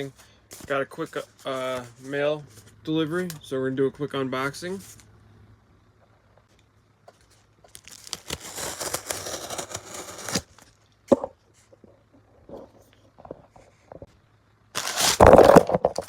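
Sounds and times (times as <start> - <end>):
package tearing open: 7.7 - 10.7, 14.8 - 16.0.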